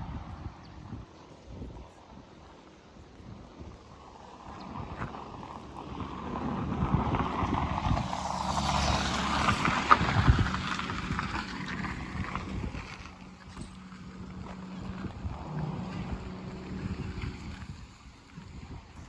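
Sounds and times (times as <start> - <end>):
wind buffeting microphone: 0.0 - 19.0
vehicle driving past: 4.3 - 19.0.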